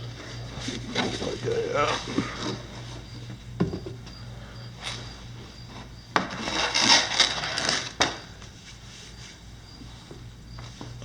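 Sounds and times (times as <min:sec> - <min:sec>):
plastic panel scraping along ground: 0:06.2 - 0:08.1.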